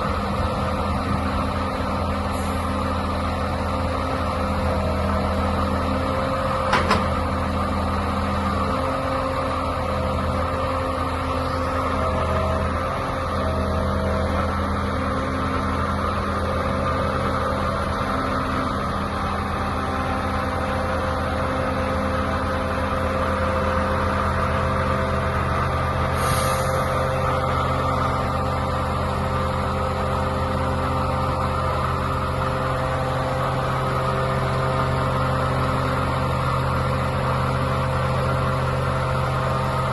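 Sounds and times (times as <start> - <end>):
truck diesel engine running: 0.0 - 39.9
short hiss of air: 26.2 - 26.9.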